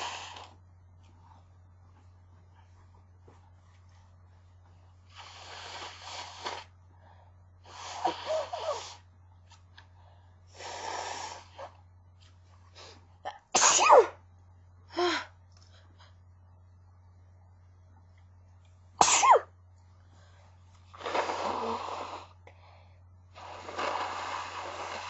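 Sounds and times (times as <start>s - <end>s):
person sneezing: 13.3s - 14.2s, 19.0s - 19.5s.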